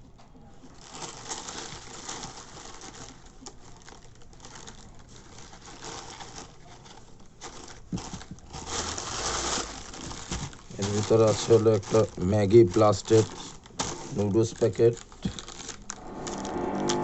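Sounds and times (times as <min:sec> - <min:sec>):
plastic packaging crinkling: 0:00.6 - 0:17.0.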